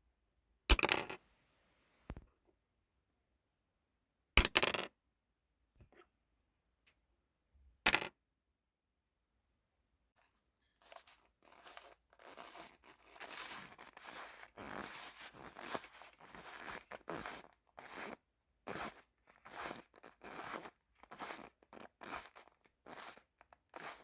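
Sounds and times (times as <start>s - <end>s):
phone handling scraping rustling: 10.8s - 24.0s.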